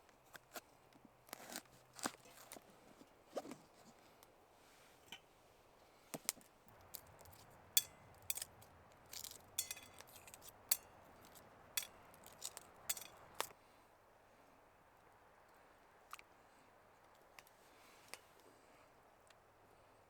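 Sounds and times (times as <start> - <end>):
small hard items clinking: 6.7 - 13.5.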